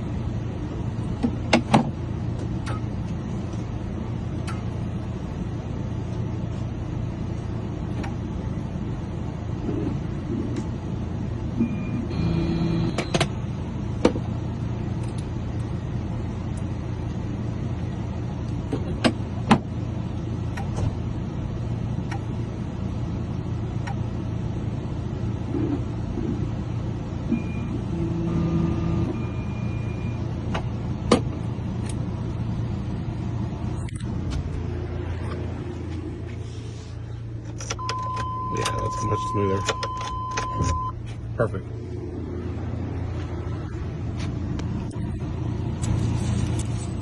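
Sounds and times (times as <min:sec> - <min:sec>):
steady low hum: 0:00.0 - 0:47.0
short electronic tones: 0:11.6 - 0:13.1.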